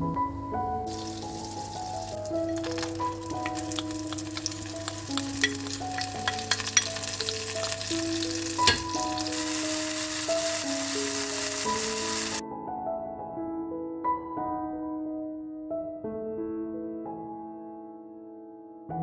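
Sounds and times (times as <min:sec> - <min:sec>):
soft piano music: 0:00.0 - 0:19.0
food sizzling in a frying pan: 0:00.9 - 0:12.4.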